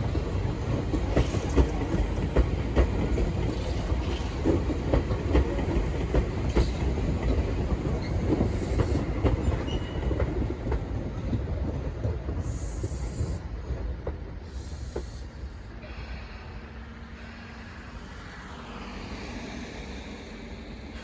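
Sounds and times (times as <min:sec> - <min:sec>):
wheels clicking over rail joints: 0:00.0 - 0:12.6
electric train rumbling on rails: 0:00.0 - 0:21.0.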